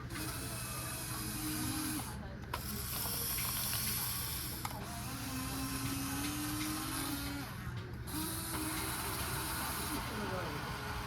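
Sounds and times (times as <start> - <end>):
small electric motors whining: 0.0 - 11.0.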